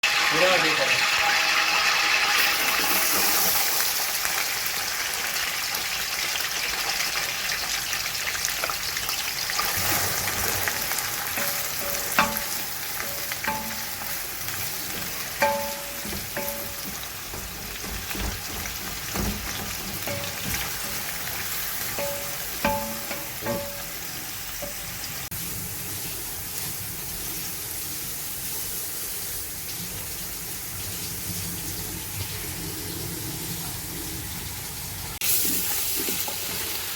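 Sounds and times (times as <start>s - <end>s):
food sizzling in a pan: 0.0s - 36.9s
metal utensil clinking on cookware: 10.7s - 25.0s.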